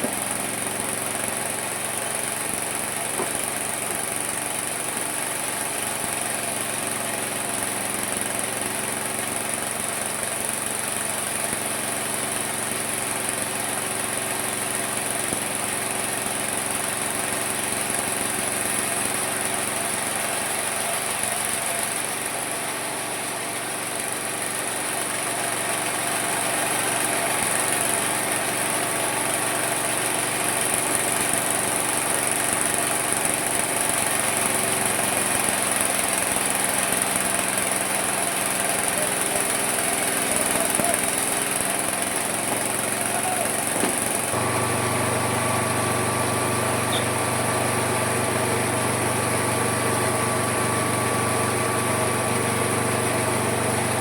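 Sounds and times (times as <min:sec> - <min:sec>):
sawmill motor hum: 0:00.0 - 0:54.0
saw blade whine: 0:11.2 - 0:54.0.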